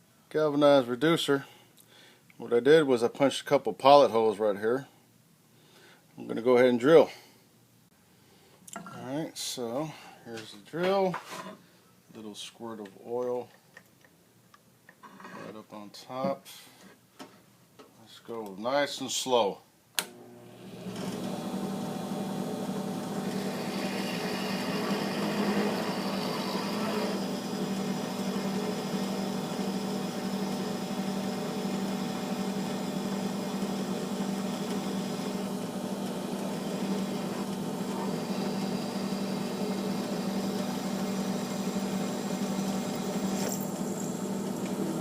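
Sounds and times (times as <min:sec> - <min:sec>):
electric drill cutting into steel: 0:23.0 - 0:45.0.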